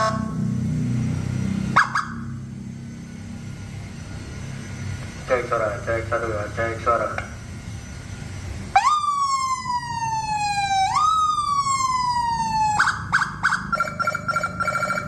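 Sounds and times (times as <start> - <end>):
electronic vehicle siren: 0.0 - 4.8, 8.7 - 15.0.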